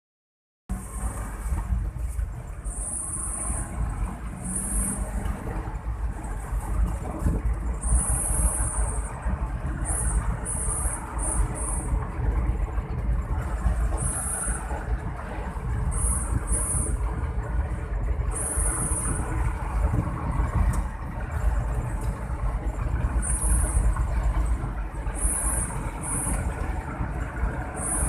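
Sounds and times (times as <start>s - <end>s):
car engine running: 0.7s - 28.0s
high-pitched whine: 9.8s - 11.9s, 13.9s - 14.9s, 18.2s - 19.5s, 25.1s - 26.6s, 27.6s - 28.0s.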